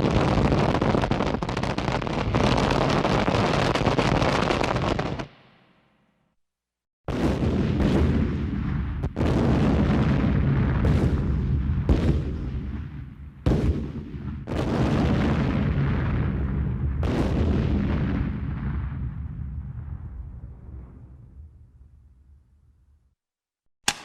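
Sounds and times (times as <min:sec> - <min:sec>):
artillery booms with rolling rumble: 0:07.1 - 0:22.6.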